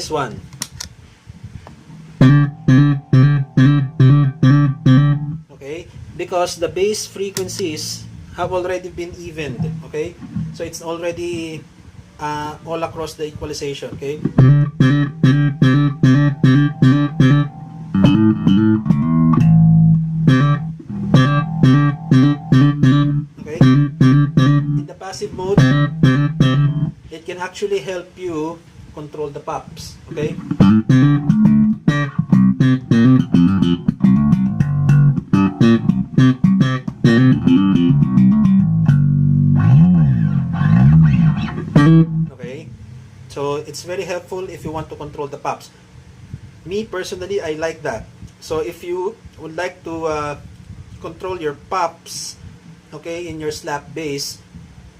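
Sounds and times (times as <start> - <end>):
slap electric bass: 1.7 - 5.5, 7.3 - 10.6, 14.0 - 27.0, 30.1 - 42.4.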